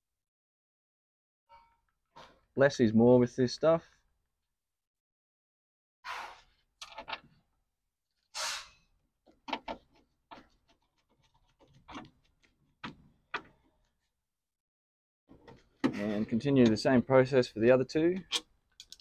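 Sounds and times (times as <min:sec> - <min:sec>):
screws and hand tools clicking: 0:18.2 - 0:19.0.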